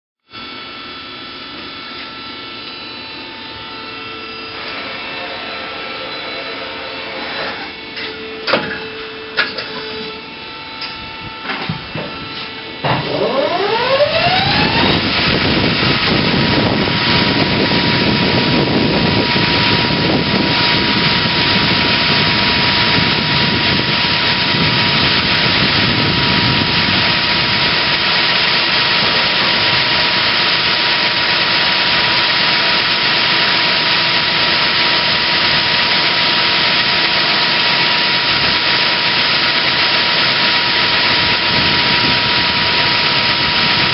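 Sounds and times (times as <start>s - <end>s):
lathe humming: 0.4s - 43.9s
lathe spindle whine: 0.4s - 43.9s.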